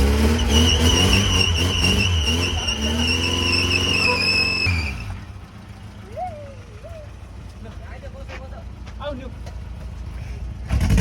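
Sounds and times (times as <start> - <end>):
car engine revving hard: 0.0 - 5.1, 10.7 - 11.0
high-pitched squeal: 0.0 - 5.2.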